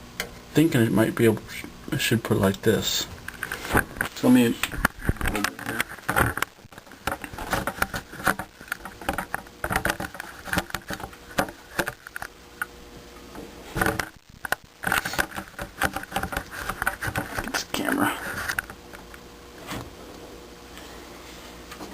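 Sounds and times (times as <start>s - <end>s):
parts clicking and rattling: 3.3s - 12.7s, 13.8s - 17.6s.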